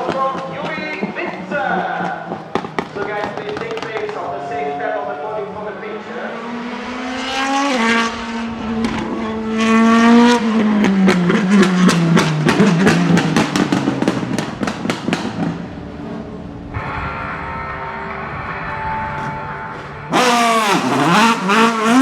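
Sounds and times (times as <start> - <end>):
exhaust crackles and pops: 0.0 - 4.3, 10.8 - 15.8
race car engine accelerating: 0.3 - 17.4, 18.9 - 22.0.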